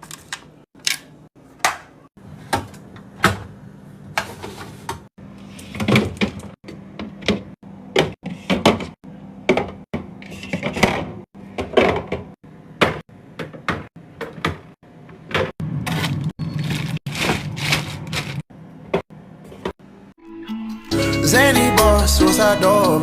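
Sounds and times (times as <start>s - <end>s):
rubbing or rustling: 15.9s - 18.4s.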